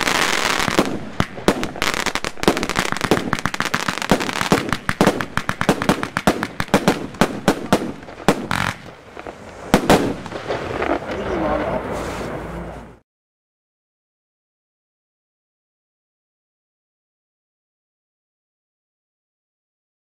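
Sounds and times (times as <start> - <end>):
fireworks cracks and bangs: 0.0 - 12.8.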